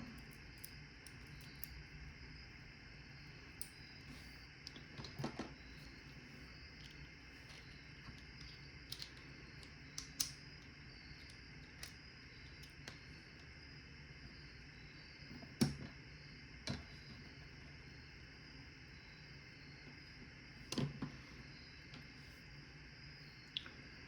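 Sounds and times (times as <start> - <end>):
small metal parts clicking: 0.1 - 1.8.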